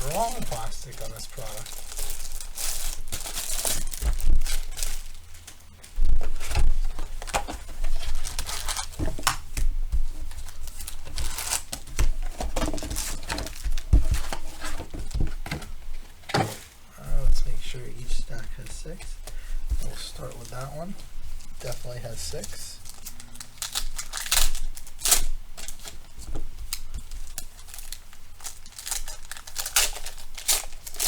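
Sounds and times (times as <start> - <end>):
plastic shrink-wrap tearing: 0.0 - 15.2, 19.8 - 31.0
box thumping: 11.8 - 16.8.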